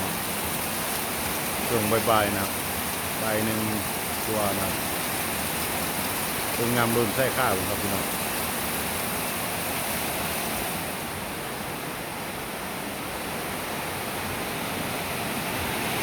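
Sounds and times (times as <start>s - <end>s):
heavy rain falling: 0.0s - 11.0s.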